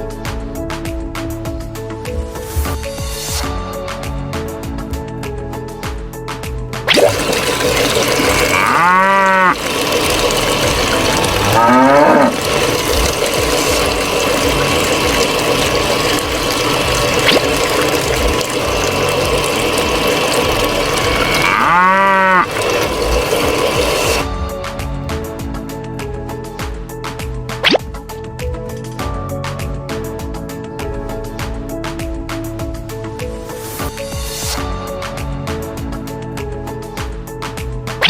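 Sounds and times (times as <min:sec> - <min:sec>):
cattle mooing: 0:08.2 - 0:09.6, 0:10.8 - 0:12.8, 0:21.0 - 0:22.6.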